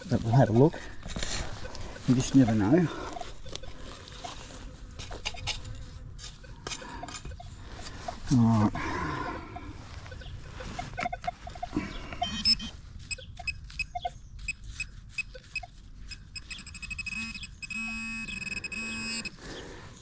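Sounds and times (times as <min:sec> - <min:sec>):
digging in soil: 0:00.0 - 0:18.0
metal detector buzzing tone: 0:01.4 - 0:04.4, 0:09.5 - 0:19.4.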